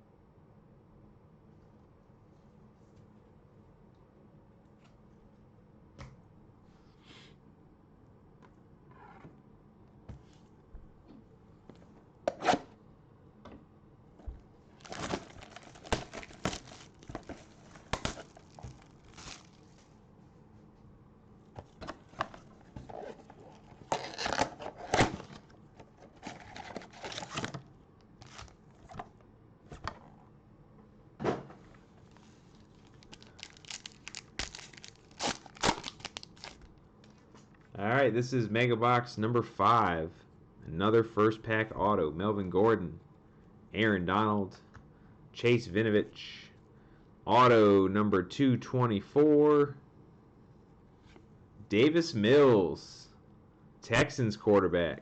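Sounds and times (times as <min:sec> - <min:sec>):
plastic wrapping tearing and crinkling: 0:14.8 - 0:19.8, 0:22.9 - 0:25.3, 0:26.2 - 0:27.5, 0:32.1 - 0:37.2.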